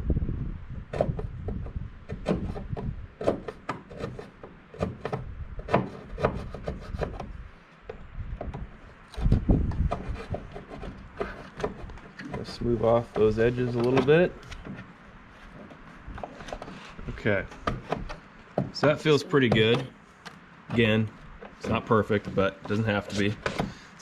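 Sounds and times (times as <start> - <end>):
scraping plastic housing: 0.9 - 24.0.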